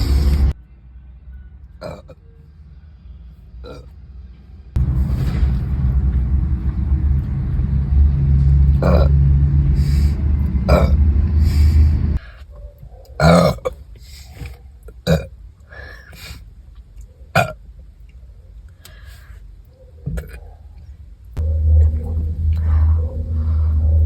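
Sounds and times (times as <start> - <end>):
woman burping: 1.8 - 2.2, 8.8 - 9.2, 10.7 - 11.0, 13.2 - 13.8, 14.9 - 15.3, 17.4 - 17.6.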